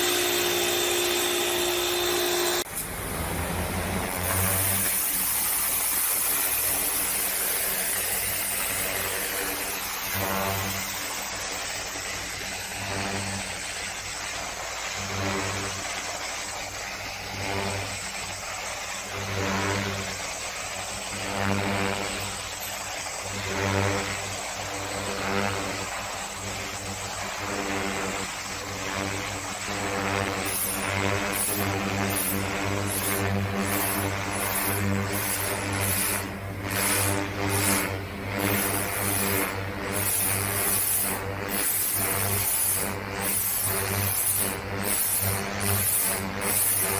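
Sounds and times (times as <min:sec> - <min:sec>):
water spray hissing: 0:00.0 - 0:15.2, 0:30.3 - 0:46.9
pressure washer engine running: 0:00.0 - 0:46.9.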